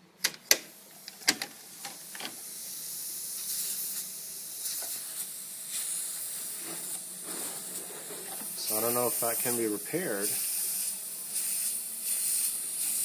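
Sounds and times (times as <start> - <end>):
compressed air hissing: 0.6 - 13.0.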